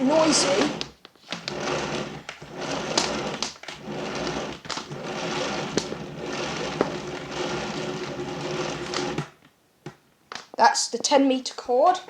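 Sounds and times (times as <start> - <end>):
vacuum cord reel rattling and clicking: 0.0 - 9.4.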